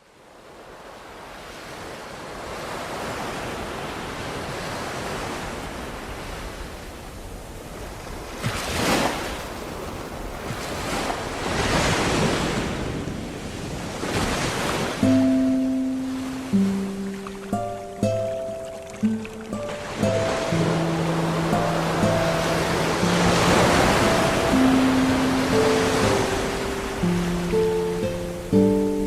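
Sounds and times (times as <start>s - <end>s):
ocean waves washing in: 0.2s - 29.0s
music notes: 15.0s - 29.0s.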